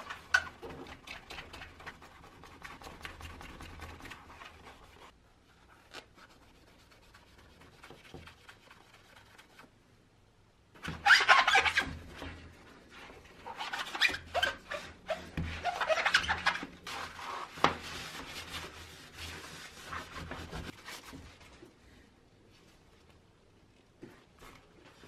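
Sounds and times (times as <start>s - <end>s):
rubbing or scraping: 10.8s - 21.8s.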